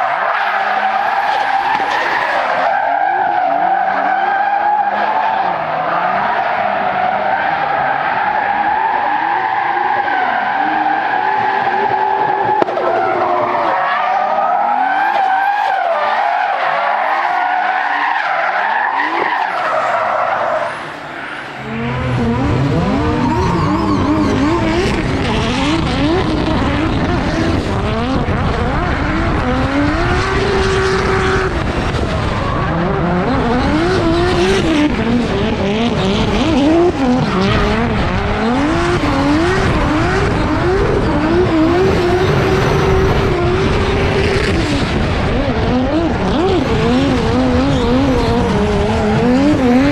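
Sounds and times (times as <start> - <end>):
car engines revving: 0.0 - 49.9
tyres screeching: 16.4 - 25.8.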